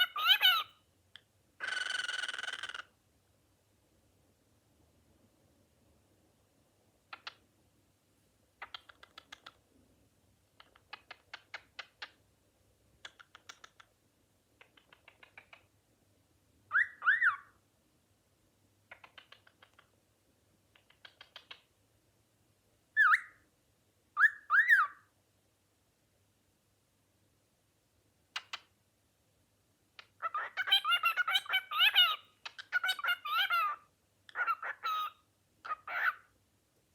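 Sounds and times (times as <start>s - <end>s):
cockatiel chattering clicks: 1.6s - 2.9s, 8.6s - 9.6s, 10.6s - 12.2s, 13.0s - 13.9s, 14.6s - 15.7s, 18.9s - 19.9s, 20.8s - 21.7s, 28.4s - 28.7s
cockatiel whistling: 16.7s - 17.5s, 23.0s - 23.4s, 24.2s - 25.0s.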